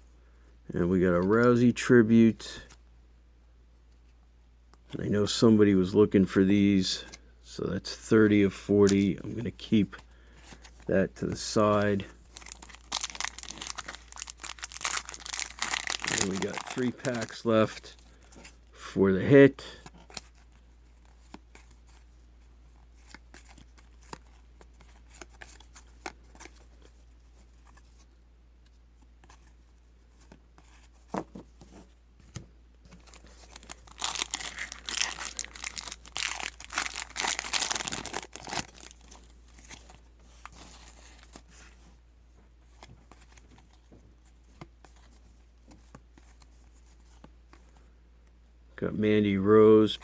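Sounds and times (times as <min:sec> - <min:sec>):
wrapper tearing and crinkling: 0:12.3 - 0:17.8, 0:33.0 - 0:39.3.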